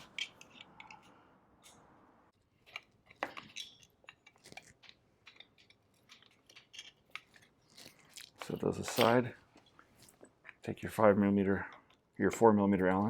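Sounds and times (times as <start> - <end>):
allen key turning screws: 0.0 - 1.8, 2.6 - 7.5.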